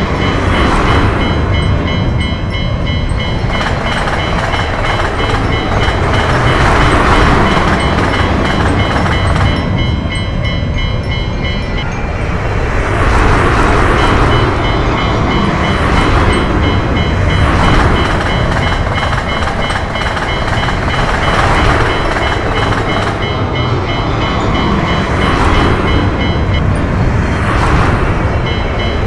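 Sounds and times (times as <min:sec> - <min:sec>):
electric train rumbling past: 0:00.0 - 0:29.0
level crossing warning bell: 0:00.0 - 0:29.0.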